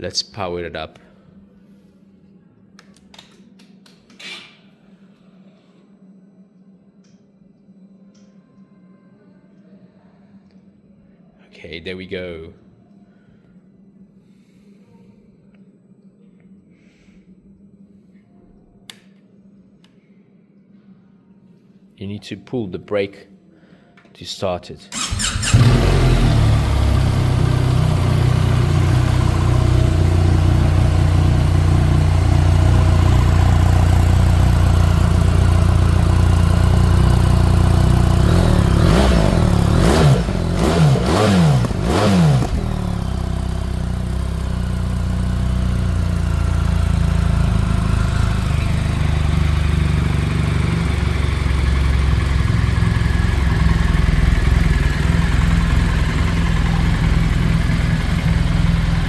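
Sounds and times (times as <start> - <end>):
engine throttle blips: 24.9 - 59.0
motorcycle engine idling: 25.0 - 59.0.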